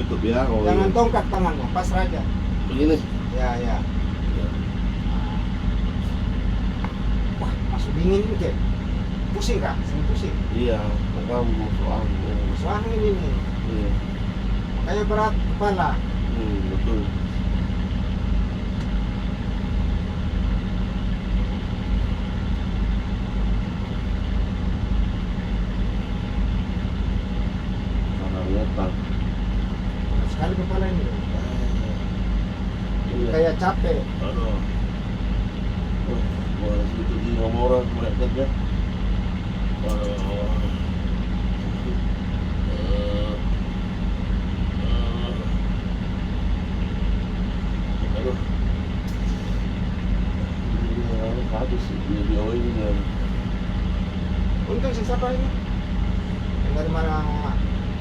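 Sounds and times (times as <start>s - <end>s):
ship engine droning: 0.0s - 58.0s.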